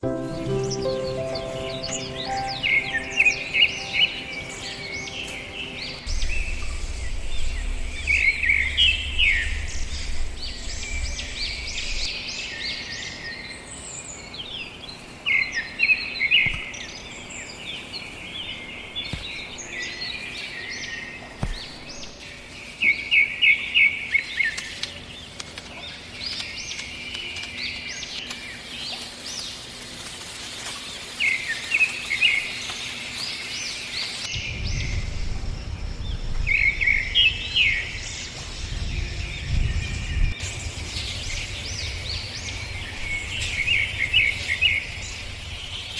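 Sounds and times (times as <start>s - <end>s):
birds chirping and singing: 0.0s - 29.6s, 31.0s - 45.9s
low rumble: 2.7s - 12.1s, 34.3s - 45.4s.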